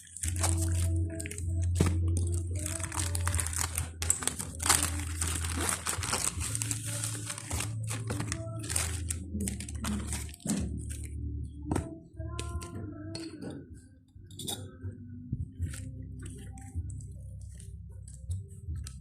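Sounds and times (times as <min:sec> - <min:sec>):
plastic wrap crinkling: 0:00.0 - 0:11.1.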